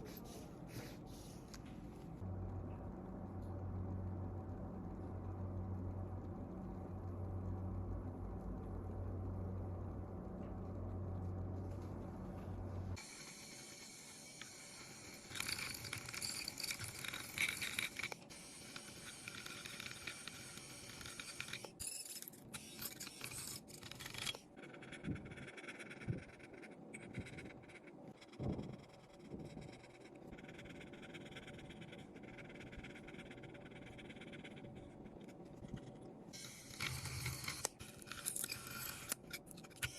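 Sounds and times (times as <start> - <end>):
steady low hum: 0.0 - 39.9
tools scraping and clicking: 35.7 - 39.9.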